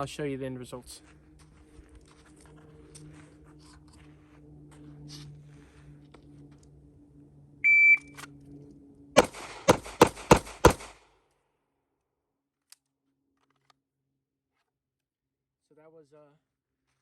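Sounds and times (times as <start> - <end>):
shot timer beep: 7.6 - 8.2
pistol shots: 9.2 - 11.0.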